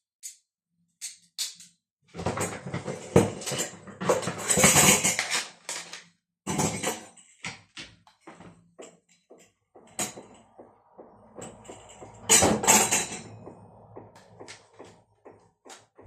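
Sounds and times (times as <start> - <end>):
pots and dishes clattering: 2.2 - 5.4, 6.5 - 7.7, 11.3 - 13.7.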